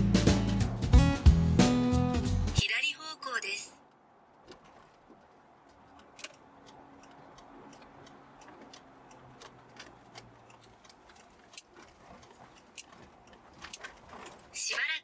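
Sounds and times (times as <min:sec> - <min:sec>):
turn signal ticking: 0:03.8 - 0:15.0.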